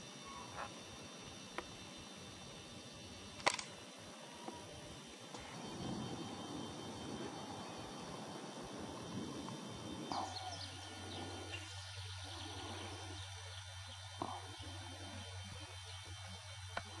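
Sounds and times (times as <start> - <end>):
steady low hum: 0.0 - 17.0
faint bird chirps: 0.1 - 0.8, 9.6 - 17.0.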